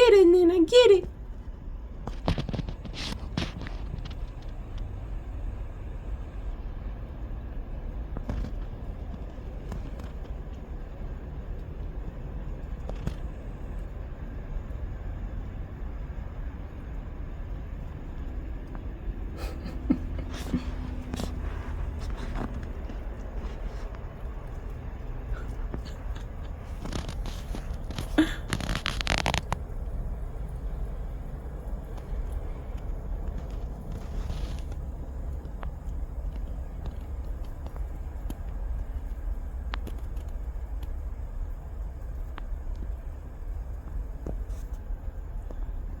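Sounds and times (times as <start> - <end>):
low outdoor rumble: 0.0 - 46.0
snow crunching: 19.4 - 29.6, 30.3 - 34.9.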